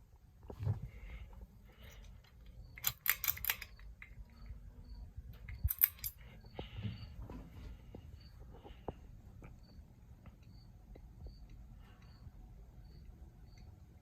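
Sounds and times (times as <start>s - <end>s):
ceiling fan humming: 0.0s - 14.0s
metallic clicks and jingles: 1.7s - 4.6s, 5.3s - 6.7s.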